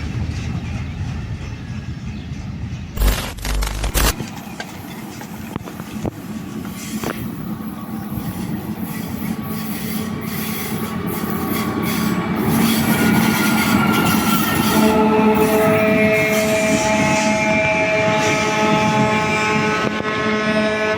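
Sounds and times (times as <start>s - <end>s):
rail rumble: 0.0s - 20.9s
diesel engine drone: 3.0s - 4.3s.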